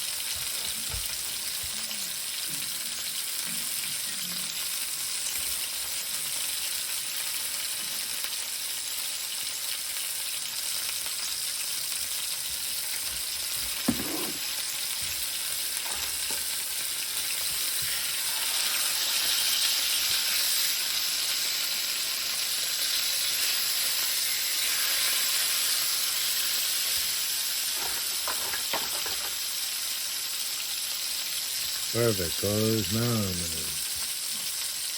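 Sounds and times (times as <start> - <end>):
food sizzling: 0.0 - 34.9
sharp knock: 13.9 - 14.4.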